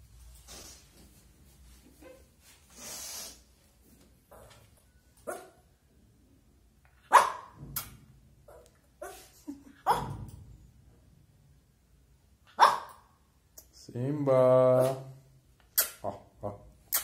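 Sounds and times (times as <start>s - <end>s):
puppy barking: 5.3s - 5.6s, 7.1s - 7.6s, 8.5s - 10.2s, 12.5s - 13.0s.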